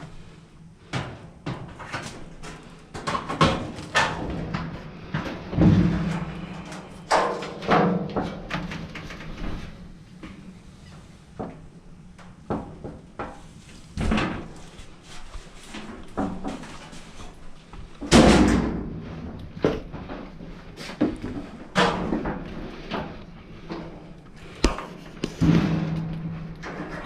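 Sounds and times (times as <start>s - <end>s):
knocks and thumps: 2.9s - 9.6s.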